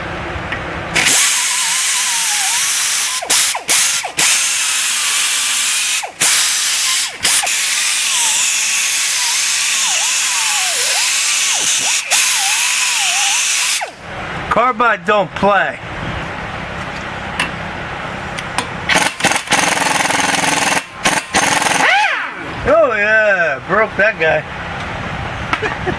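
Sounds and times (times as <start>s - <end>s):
power tool drilling into screw: 1.0s - 14.0s, 18.9s - 22.3s.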